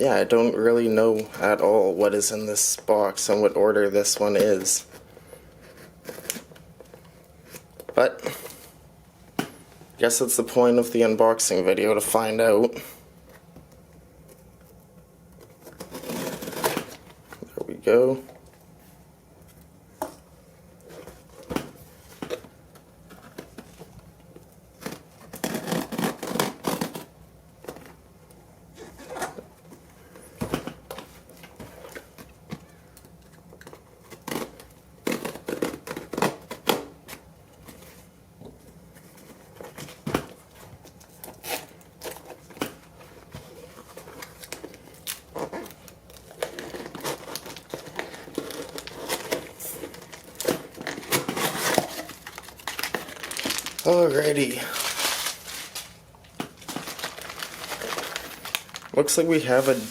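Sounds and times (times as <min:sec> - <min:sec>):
tape tearing: 0:05.6 - 0:06.6, 0:15.4 - 0:17.2, 0:24.8 - 0:27.1, 0:33.4 - 0:37.2, 0:41.0 - 0:42.8, 0:43.7 - 0:59.9
cardboard and packing material rustling: 0:15.4 - 0:17.5, 0:24.7 - 0:28.0, 0:33.4 - 0:59.9.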